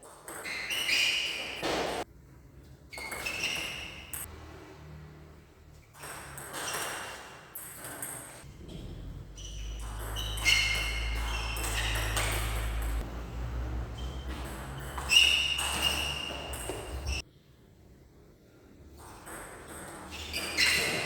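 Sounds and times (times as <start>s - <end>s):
ball striking racket with ping: 9.6s - 13.0s.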